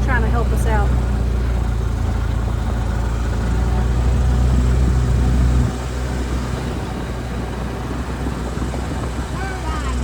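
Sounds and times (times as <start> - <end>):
vehicle engine droning: 0.0 - 10.0.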